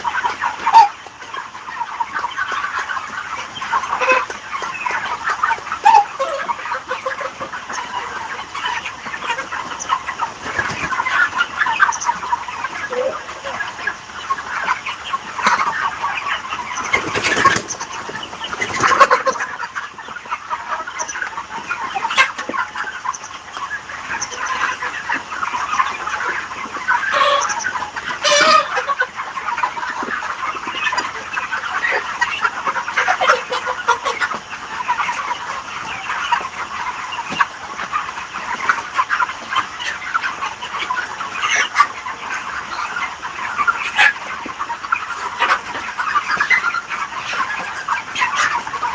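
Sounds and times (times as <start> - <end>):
chickens clucking: 0.0 - 48.9.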